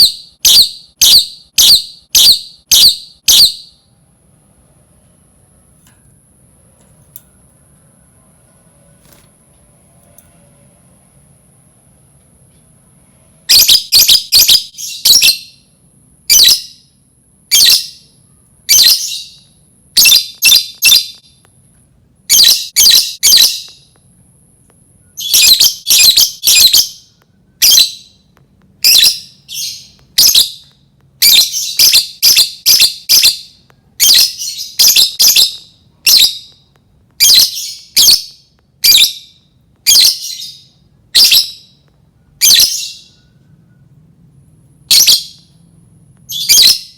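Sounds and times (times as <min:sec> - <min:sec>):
lovebird shrill chirping: 0:00.0 - 0:03.9, 0:13.5 - 0:15.7, 0:16.3 - 0:16.9, 0:17.5 - 0:21.4, 0:22.3 - 0:23.9, 0:25.0 - 0:36.6, 0:37.2 - 0:41.8, 0:42.4 - 0:43.4, 0:44.9 - 0:45.6, 0:46.3 - 0:46.9.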